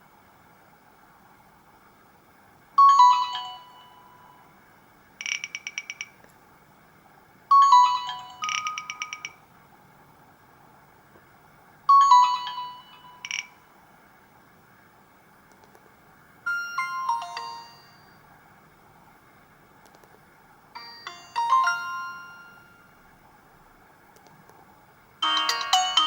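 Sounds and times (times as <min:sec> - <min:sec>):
phone ringtone chime and beeps: 0:02.8 - 0:04.4, 0:05.2 - 0:06.2, 0:07.5 - 0:09.4, 0:11.9 - 0:13.6, 0:16.5 - 0:18.2, 0:20.8 - 0:23.0, 0:25.2 - 0:26.0.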